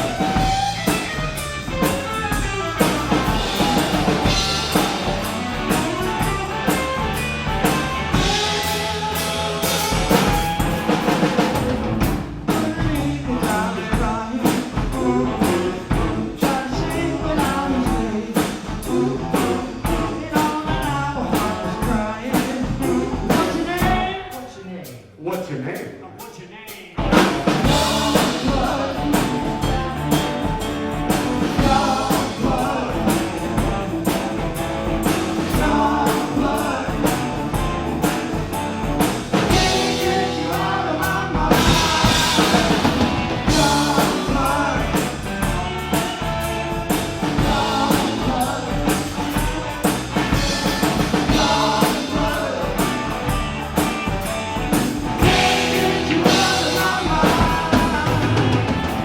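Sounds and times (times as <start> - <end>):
rock band playing: 0.0 - 24.4, 27.0 - 59.0
drum kit beat: 0.0 - 59.0.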